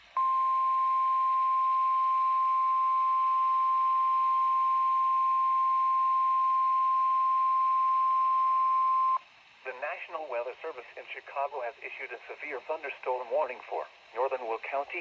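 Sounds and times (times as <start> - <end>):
faint radio hiss: 0.0 - 15.0
steady warning alarm beep: 0.2 - 9.2.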